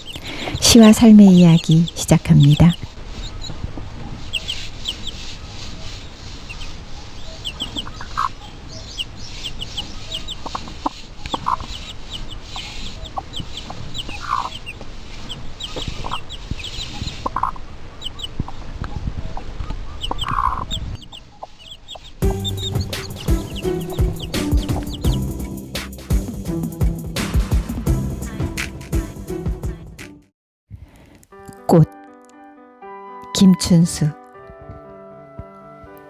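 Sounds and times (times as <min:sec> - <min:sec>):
small birds chirping: 0:00.0 - 0:25.6.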